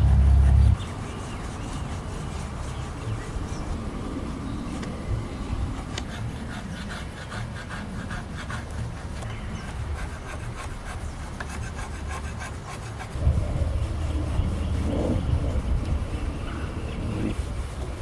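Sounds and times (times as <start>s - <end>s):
loud low rumble: 0.0s - 0.8s, 13.2s - 17.4s.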